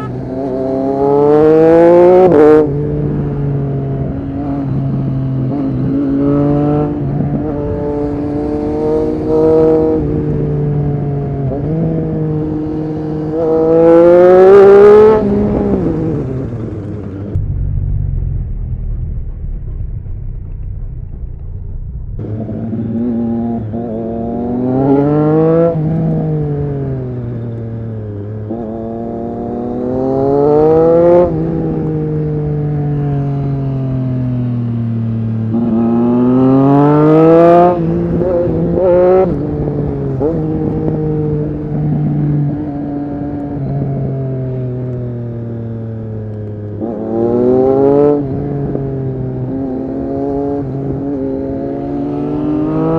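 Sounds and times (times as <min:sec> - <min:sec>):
motorcycle engine revving hard: 0:35.4 - 0:44.1, 0:46.8 - 0:52.9.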